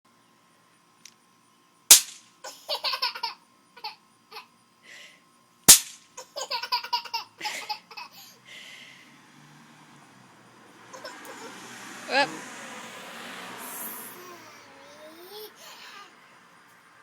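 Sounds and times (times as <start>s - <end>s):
snap-pops cracking: 1.9s - 2.2s, 5.7s - 6.0s
people laughing: 11.0s - 11.6s.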